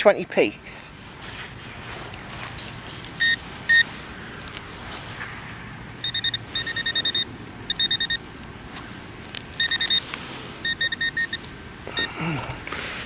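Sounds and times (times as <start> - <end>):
pinpointer beeping at high pitch: 3.2 - 3.8, 6.0 - 8.2, 9.6 - 10.0, 10.6 - 11.4.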